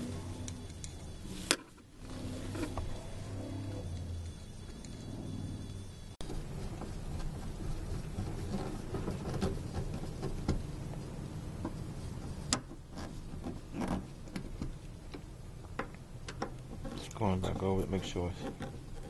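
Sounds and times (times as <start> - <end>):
low rumble: 0.0 - 6.8.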